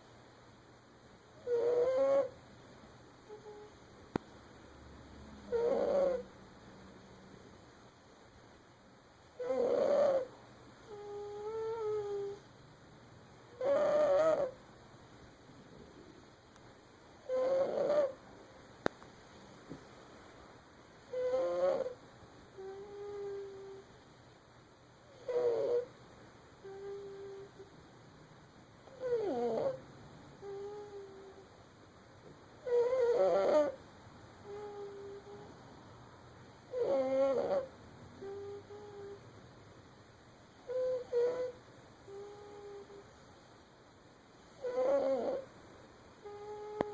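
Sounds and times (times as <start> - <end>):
soft steady hum: 0.0 - 46.9
baby snoring: 1.4 - 2.4, 5.4 - 6.3, 9.4 - 10.3, 13.6 - 14.6, 17.2 - 18.2, 21.1 - 22.0, 25.1 - 25.9, 28.9 - 29.8, 32.6 - 33.8, 36.7 - 39.2, 40.7 - 43.0, 44.6 - 45.5, 46.2 - 46.9.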